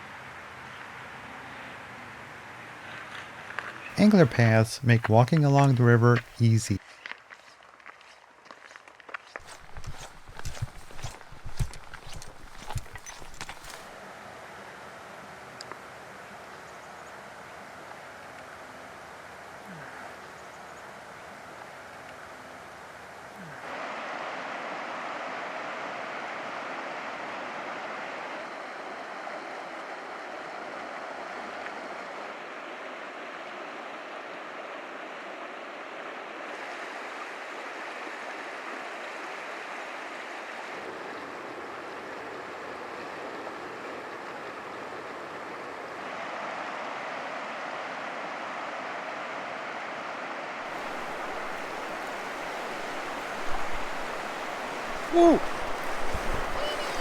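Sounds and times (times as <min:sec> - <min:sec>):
river water rushing: 0:09.4 - 0:14.0, 0:32.9 - 0:57.0.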